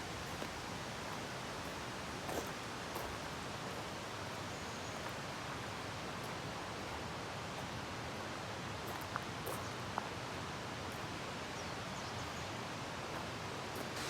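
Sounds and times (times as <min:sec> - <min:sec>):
mountain stream rushing: 0:00.0 - 0:14.0.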